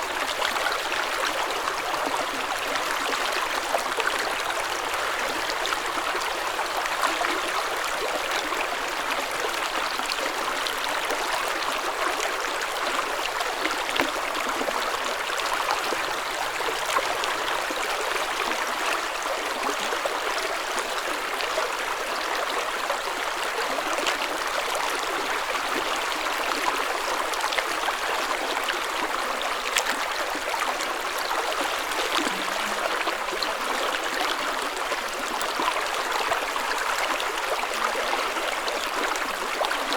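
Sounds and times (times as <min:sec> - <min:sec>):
stream water flowing: 0:00.0 - 0:39.9.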